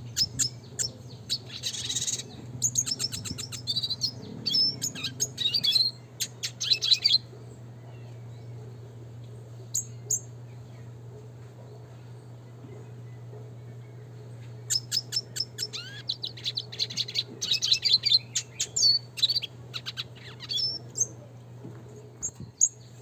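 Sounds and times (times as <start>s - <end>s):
bird twittering and chirping: 0.0s - 8.9s, 11.7s - 21.2s
steady low hum: 0.0s - 23.0s.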